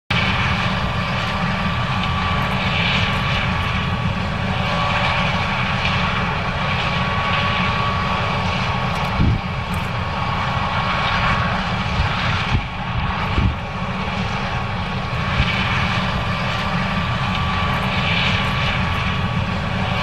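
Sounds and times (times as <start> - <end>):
combine harvester engine drone: 0.1 - 20.0
thin constant whine: 0.1 - 20.0.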